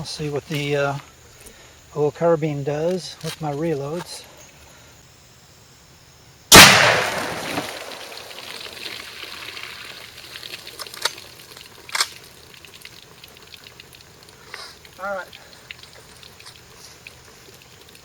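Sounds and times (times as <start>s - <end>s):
rifle shot: 6.5s - 8.4s
water splashing: 6.8s - 18.0s.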